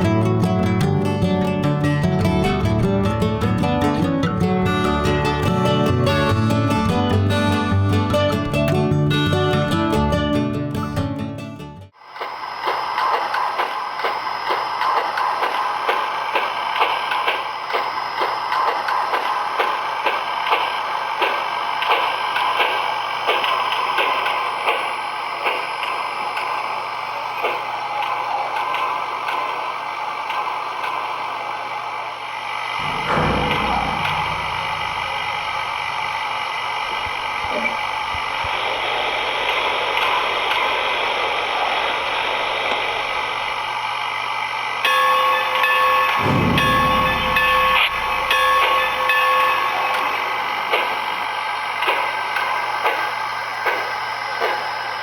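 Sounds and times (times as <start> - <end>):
steam locomotive chuffing: 12.0 - 55.0
steam whistle: 44.8 - 51.3.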